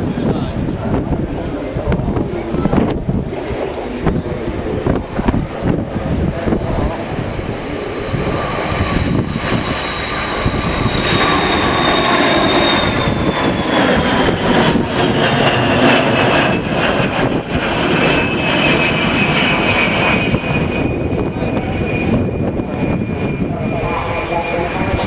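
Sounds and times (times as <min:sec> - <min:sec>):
jet aircraft flying past: 0:00.0 - 0:25.0.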